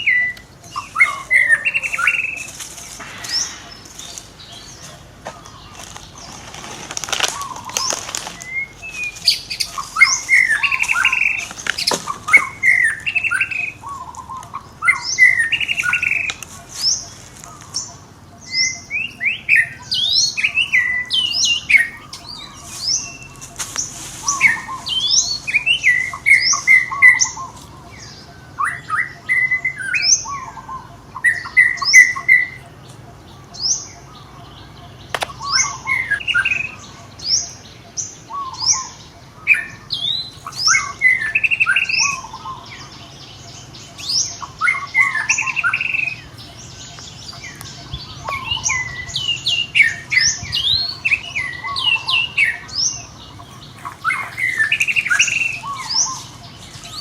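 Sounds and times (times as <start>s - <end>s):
high-pitched chirping and squeaking calls: 0.0s - 57.0s
sharp clicks: 35.1s - 35.5s.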